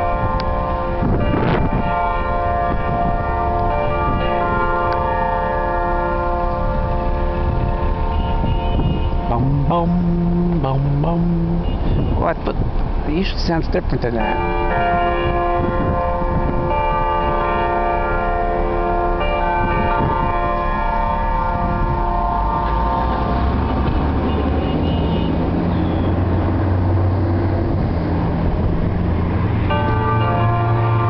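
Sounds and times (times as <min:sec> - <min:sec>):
church bells chiming: 0:00.0 - 0:09.8, 0:14.0 - 0:25.6, 0:28.4 - 0:31.0
vehicle engine rumble: 0:00.0 - 0:31.0.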